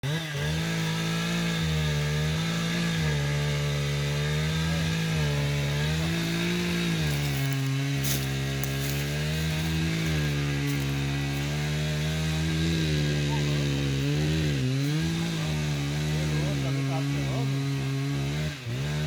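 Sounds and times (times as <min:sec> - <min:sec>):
chainsaw running at high revs: 0:00.0 - 0:19.0.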